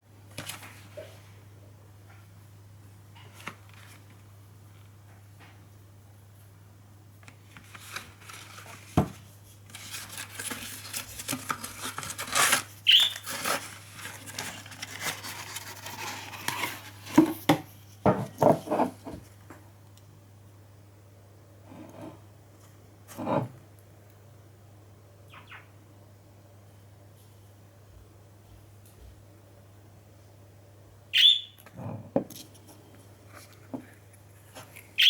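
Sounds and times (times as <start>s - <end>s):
packaging rustling: 7.5s - 17.5s.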